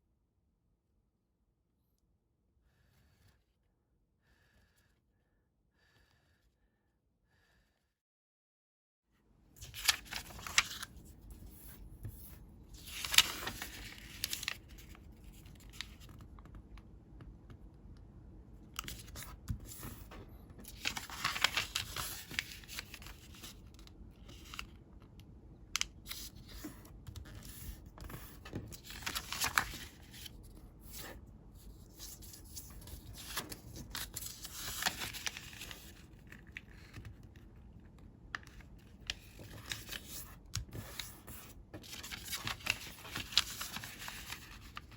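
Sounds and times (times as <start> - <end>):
paper rustling and creasing: 9.6 - 16.5, 18.8 - 24.8, 25.8 - 37.5, 38.4 - 44.9.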